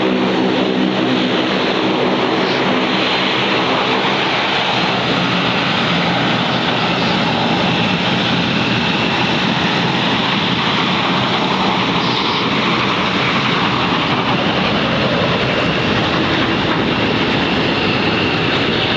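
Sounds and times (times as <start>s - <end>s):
turboprop engines droning: 0.0s - 18.9s
faint high whine: 11.3s - 18.9s.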